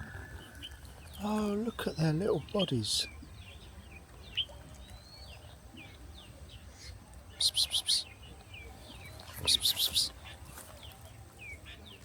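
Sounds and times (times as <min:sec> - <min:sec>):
bird chirps: 0:00.0 - 0:12.0
harsh rapid bird notes: 0:09.4 - 0:10.2.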